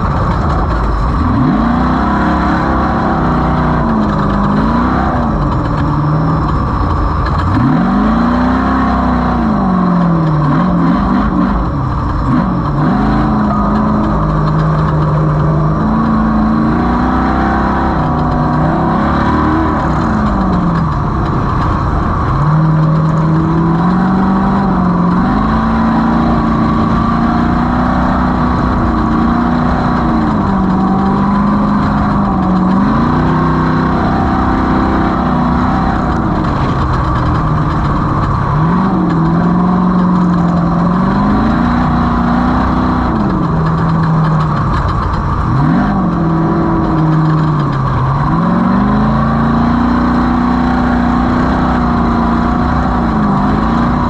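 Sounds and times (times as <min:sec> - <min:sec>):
race vehicle engine running hard: 0:00.0 - 0:54.0.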